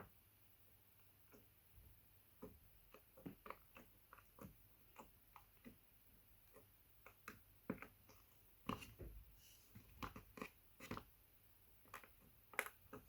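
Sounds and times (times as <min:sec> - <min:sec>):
slime squishing with clicks and pops: 0:02.3 - 0:09.0, 0:11.8 - 0:13.0.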